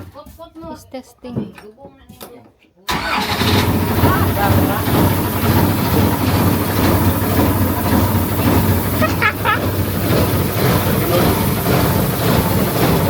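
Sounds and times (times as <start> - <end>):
boat engine rumbling: 2.9 - 13.0.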